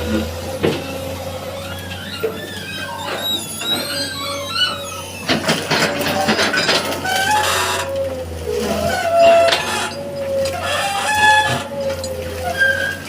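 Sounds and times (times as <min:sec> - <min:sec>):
excavator engine humming: 0:00.0 - 0:13.0
high squeaks and chirps: 0:01.4 - 0:05.6.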